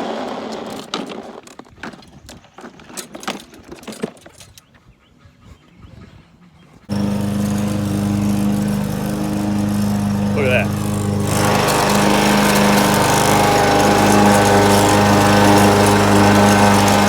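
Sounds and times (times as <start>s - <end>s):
lawn mower engine running: 6.9s - 17.0s.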